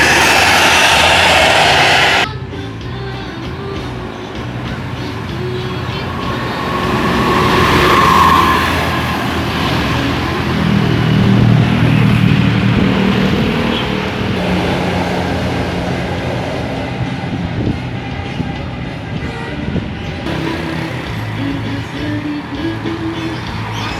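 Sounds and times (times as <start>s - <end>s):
steady low tone: 0.0s - 2.3s
buses driving past: 0.0s - 23.9s.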